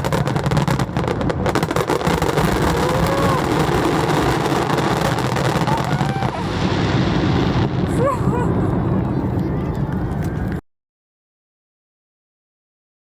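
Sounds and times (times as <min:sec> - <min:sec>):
fireworks crackling: 0:00.0 - 0:10.6
loud rumbling din: 0:01.8 - 0:10.6.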